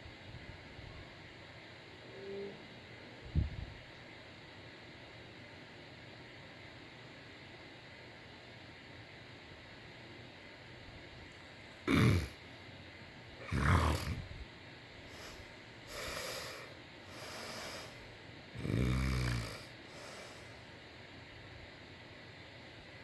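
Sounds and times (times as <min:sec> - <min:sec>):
person snoring: 0:11.9 - 0:12.4, 0:13.4 - 0:14.3, 0:15.1 - 0:18.0, 0:18.6 - 0:20.5
soft breaths: 0:15.0 - 0:20.9.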